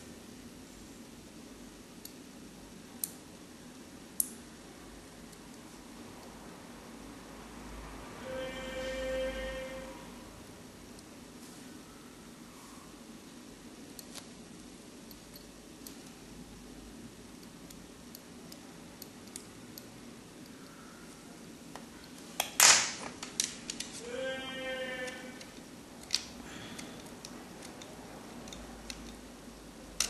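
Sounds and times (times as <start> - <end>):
small clicks of tools: 4.2 - 4.4, 25.0 - 29.3
high squeak-like tone: 8.2 - 10.1.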